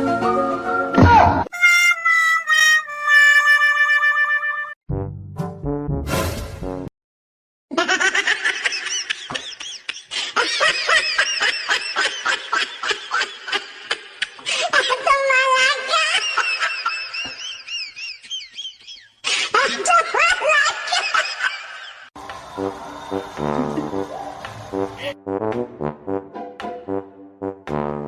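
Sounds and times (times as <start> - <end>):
high-pitched laughter: 7.7 - 22.0.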